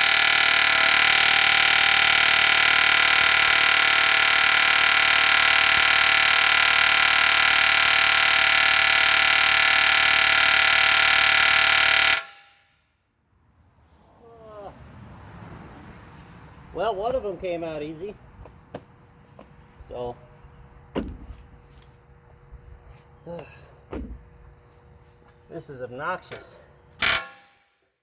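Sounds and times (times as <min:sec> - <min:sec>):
pneumatic air hammer: 0:00.0 - 0:12.7, 0:26.4 - 0:27.8.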